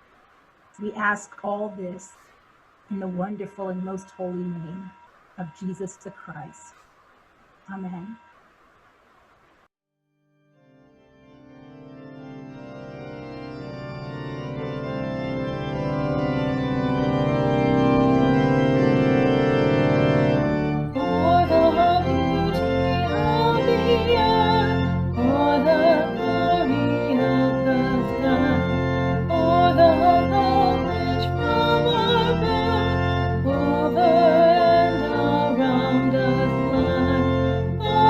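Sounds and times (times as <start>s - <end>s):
organ chord: 10.4s - 38.0s
person singing with vibrato: 21.0s - 38.0s.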